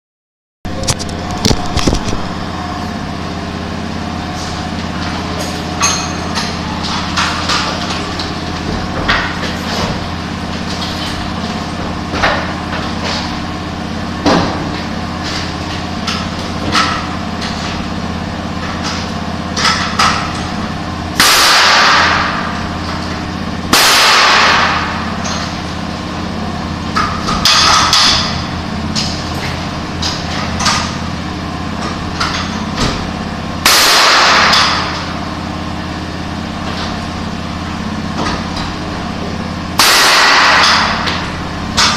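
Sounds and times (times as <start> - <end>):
low machine hum: 0.7 - 41.9
knocks and clanks: 4.4 - 13.5, 14.2 - 17.9, 26.9 - 31.1, 31.7 - 35.3, 39.8 - 41.9.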